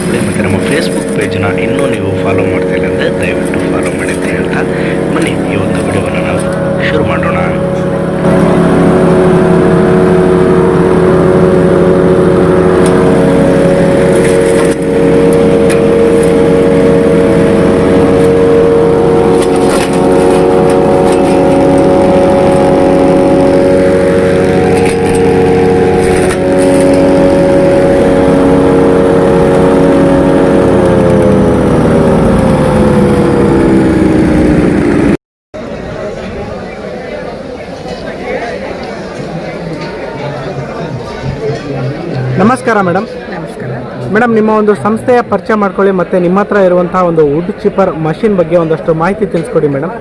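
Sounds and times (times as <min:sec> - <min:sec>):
wood chipper engine running: 0:00.0 - 0:35.2.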